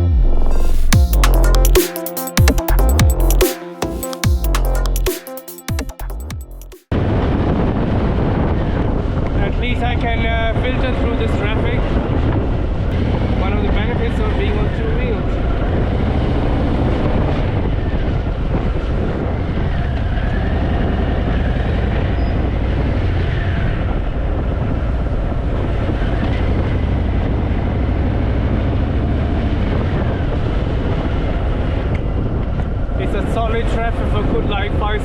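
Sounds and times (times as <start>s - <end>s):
motorcycle engine running: 13.0s - 15.0s.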